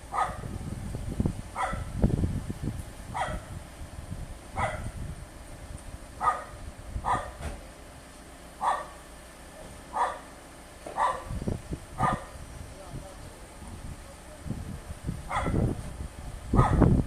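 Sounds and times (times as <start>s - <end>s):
low rumble: 0.0s - 8.0s
dog barking: 0.1s - 0.5s, 1.6s - 1.9s, 3.2s - 3.5s, 4.6s - 4.9s, 6.2s - 7.4s, 8.6s - 9.0s, 9.9s - 10.3s, 11.0s - 11.3s, 12.0s - 12.3s, 15.3s - 15.6s, 16.6s - 16.8s.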